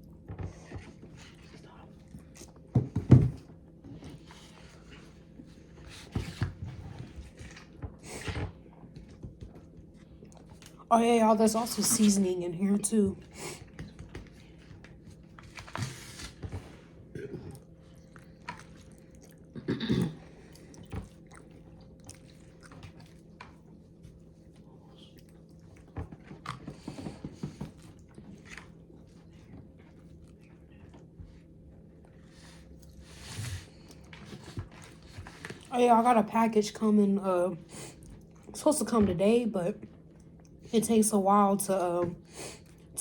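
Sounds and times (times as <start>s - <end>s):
chewing noodles: 0.0s - 2.8s, 3.8s - 10.9s, 13.2s - 35.8s.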